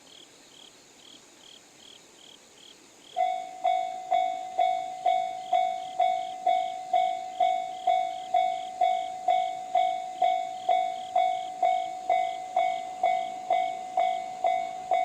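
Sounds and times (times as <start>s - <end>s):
level crossing warning bell: 3.2s - 15.0s.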